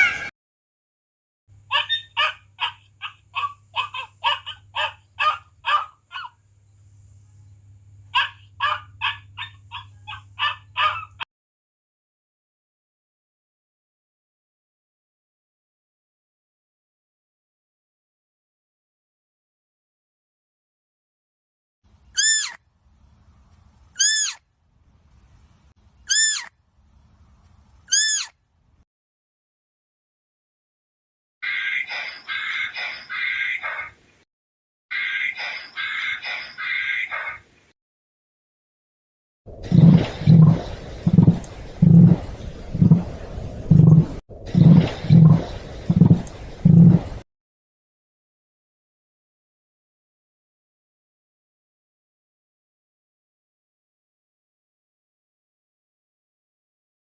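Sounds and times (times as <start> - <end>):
poultry bird calling: 1.7 - 6.4, 8.2 - 11.2, 22.0 - 22.6, 24.0 - 24.4, 26.0 - 26.5, 27.9 - 28.3, 31.4 - 34.0, 34.9 - 37.5
steady low hum: 2.4 - 10.8, 39.5 - 47.2.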